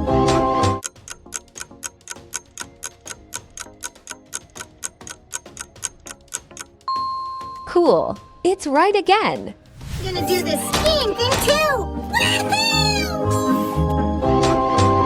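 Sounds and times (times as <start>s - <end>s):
soft background music: 0.0s - 15.0s
clock ticking rapidly: 0.8s - 6.9s.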